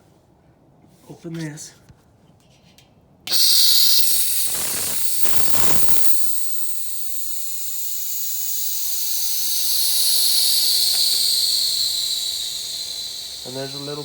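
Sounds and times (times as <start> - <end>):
compressed air hissing from valve: 3.3 - 14.0.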